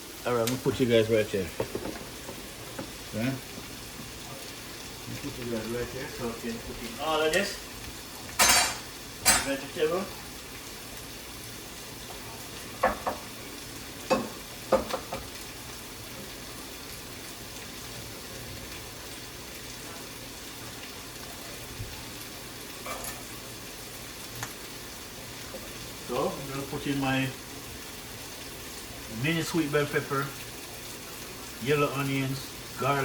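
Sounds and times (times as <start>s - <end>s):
chicken sizzling in oil: 0.0s - 33.0s
spoon knocking against pan: 1.6s - 3.0s, 12.8s - 13.3s, 14.1s - 15.3s.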